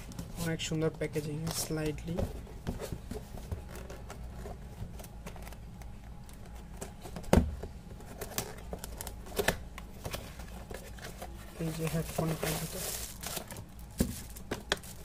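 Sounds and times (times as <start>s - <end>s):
low steady hum: 0.0s - 15.0s
cardboard packaging rustling: 8.0s - 15.0s.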